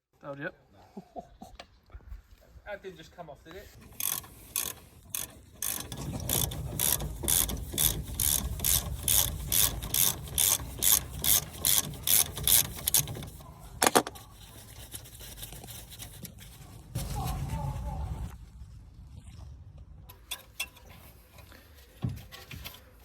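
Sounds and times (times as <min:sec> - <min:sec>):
ratchet wrench clicking: 0:03.8 - 0:13.4.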